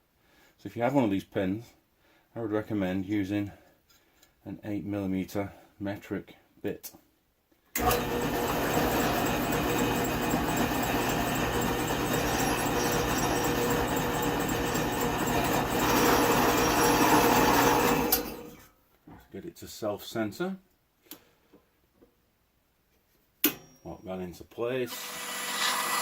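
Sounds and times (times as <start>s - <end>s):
electric drill drilling through steel: 7.8s - 18.6s, 24.9s - 26.0s.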